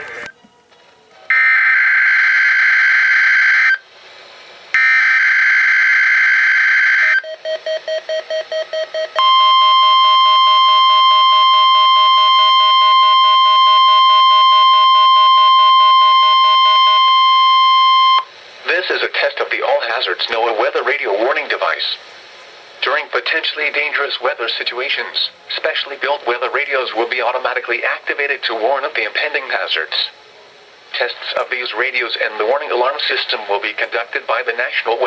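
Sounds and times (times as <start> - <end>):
steady warning alarm tone: 1.3 - 3.9, 4.8 - 18.4.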